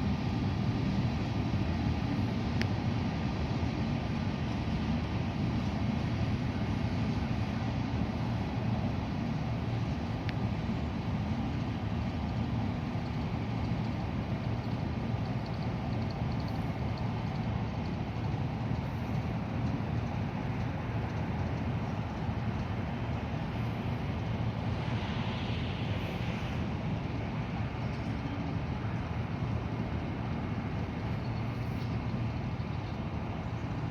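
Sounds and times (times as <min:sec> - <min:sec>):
brief hiss: 0:24.6 - 0:28.4.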